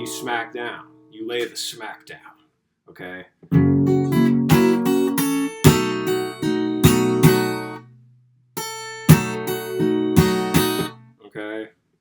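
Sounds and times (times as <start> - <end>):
fingerstyle acoustic guitar: 0.0 - 1.2, 3.5 - 11.1
percussive slaps on guitar strings: 3.5 - 7.8, 9.1 - 11.0.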